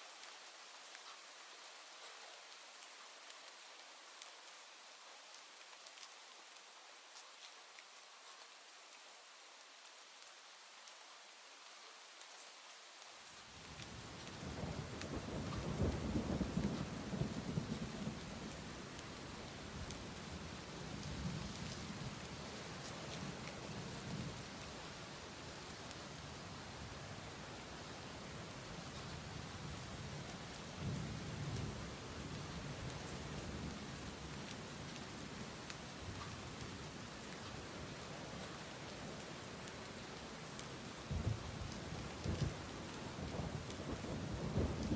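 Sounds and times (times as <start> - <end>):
steady rain: 0.0 - 44.9
rumble of thunder: 14.4 - 20.0, 41.1 - 44.9.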